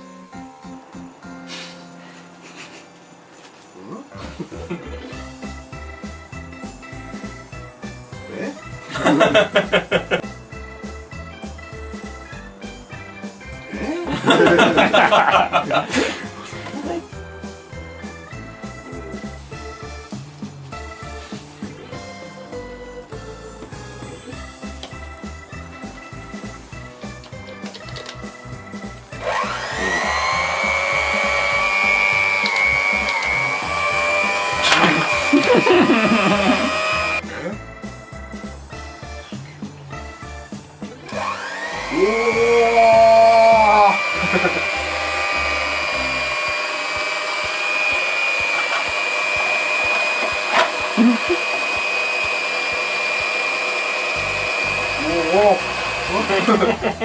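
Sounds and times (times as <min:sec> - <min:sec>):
electric kitchen mixer running: 0:14.1 - 0:16.1, 0:29.1 - 0:37.2, 0:41.0 - 0:57.0.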